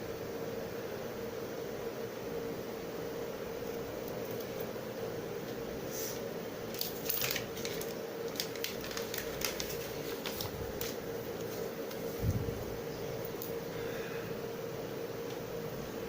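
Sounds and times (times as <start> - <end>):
steady low hum: 0.0 - 16.0
clicks and crinkles: 6.7 - 12.1.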